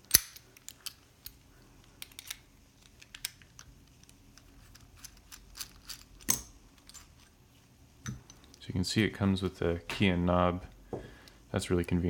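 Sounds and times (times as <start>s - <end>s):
padlock metallic clicks: 0.0s - 1.4s.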